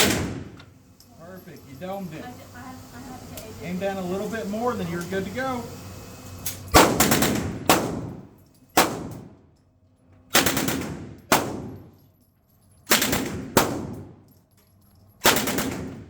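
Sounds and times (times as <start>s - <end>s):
submachine gun bursts: 6.7s - 8.2s, 10.3s - 11.9s, 12.9s - 14.1s, 15.2s - 16.0s.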